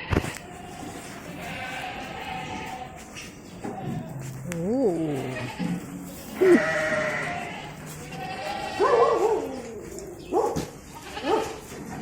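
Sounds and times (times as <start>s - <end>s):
goats bleating: 0.0s - 10.0s, 10.8s - 12.0s.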